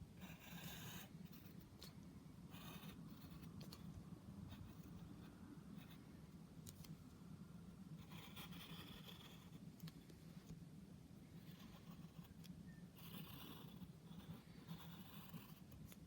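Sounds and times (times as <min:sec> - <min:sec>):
low room hum: 0:00.0 - 0:16.0
pen scratching on paper: 0:00.2 - 0:03.9, 0:04.5 - 0:06.0, 0:08.0 - 0:09.6, 0:11.4 - 0:16.0.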